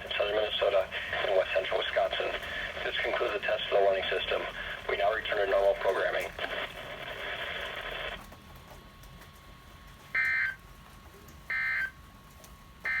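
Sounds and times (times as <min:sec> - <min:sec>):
radio hiss: 0:00.0 - 0:08.2.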